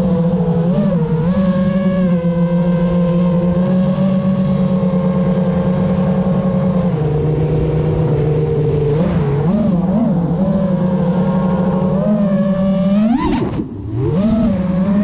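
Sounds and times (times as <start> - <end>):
quadcopter motors humming: 0.0 - 15.0.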